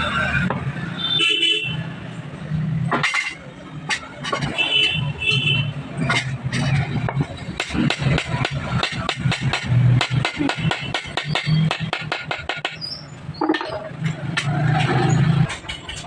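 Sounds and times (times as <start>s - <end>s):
fast sharp knocks: 6.1s - 12.8s.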